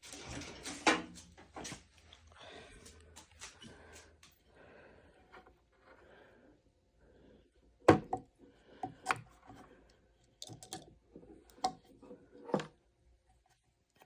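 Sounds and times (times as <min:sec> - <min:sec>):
hard objects clicking and knocking: 0:10.4 - 0:10.9.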